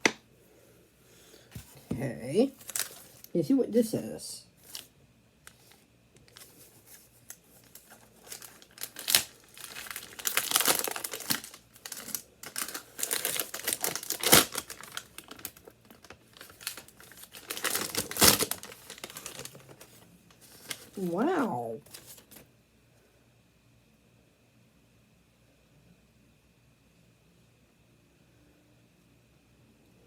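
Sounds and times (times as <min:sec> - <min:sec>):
packaging crinkling and tearing: 0:02.5 - 0:03.3, 0:04.6 - 0:04.9, 0:05.5 - 0:22.4.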